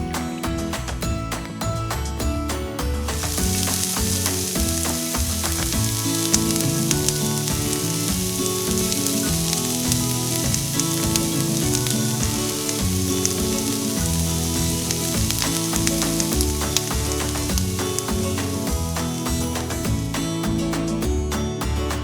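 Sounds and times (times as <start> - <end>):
food sizzling in hot oil: 3.1 - 19.8.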